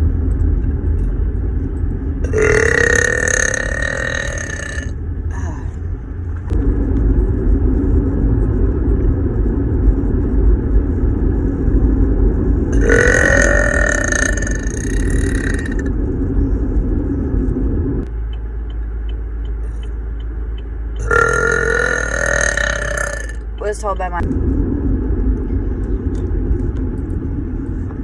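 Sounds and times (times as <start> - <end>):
higher burp rising in pitch: 2.2 - 5.4, 12.7 - 15.9, 21.0 - 23.5
woman burping loudly: 2.2 - 5.5, 12.8 - 15.9, 21.0 - 23.4.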